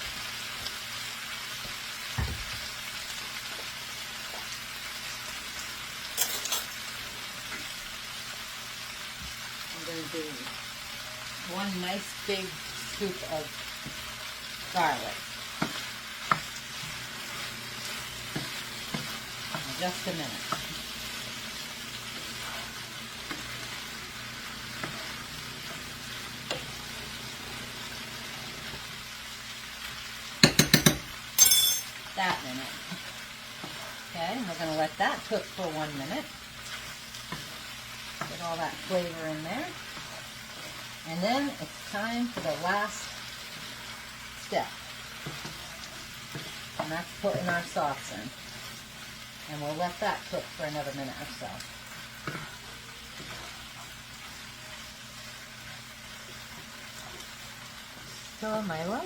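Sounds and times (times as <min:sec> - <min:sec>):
food sizzling in a frying pan: 0:00.0 - 0:59.0
spatula clinking against pan: 0:30.4 - 0:32.0.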